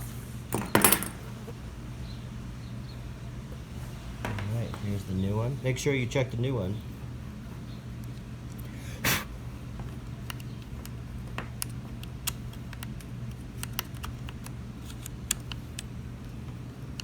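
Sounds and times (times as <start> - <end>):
steady low hum: 0.0 - 17.0
small clicks and taps: 9.7 - 17.0.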